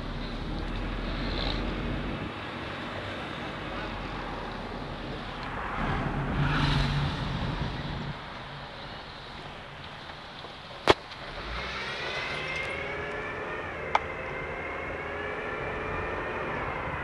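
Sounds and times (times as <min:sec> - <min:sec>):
car engine humming: 0:00.0 - 0:17.0.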